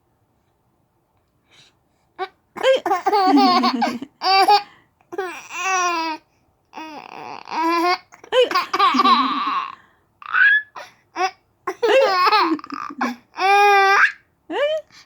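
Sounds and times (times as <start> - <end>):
baby laughing: 2.6 - 4.6, 7.5 - 14.2.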